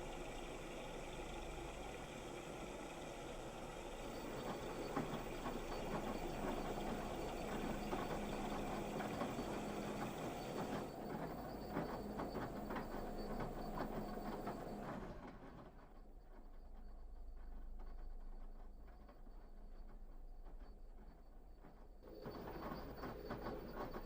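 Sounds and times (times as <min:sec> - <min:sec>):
washing machine drum rumble: 0:00.0 - 0:14.8.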